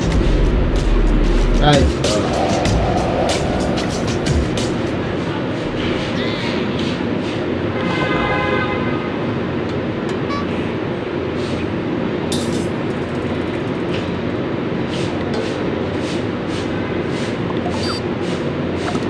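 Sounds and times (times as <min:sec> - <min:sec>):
traffic noise: 0:00.0 - 0:19.0
car horn: 0:07.7 - 0:09.4.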